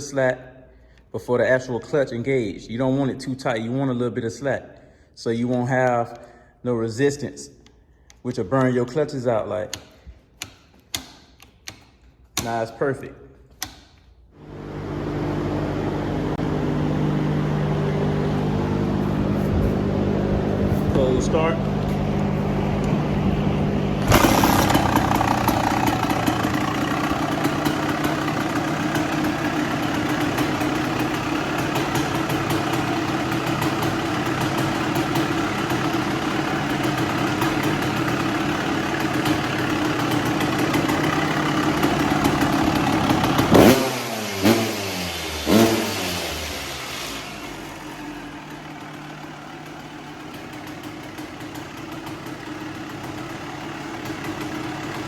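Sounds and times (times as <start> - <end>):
motorcycle engine revving: 14.4 - 55.0.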